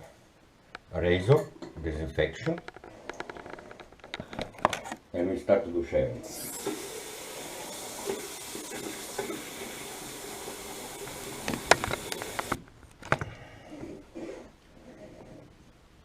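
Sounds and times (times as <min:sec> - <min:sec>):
water running: 0:06.2 - 0:12.6.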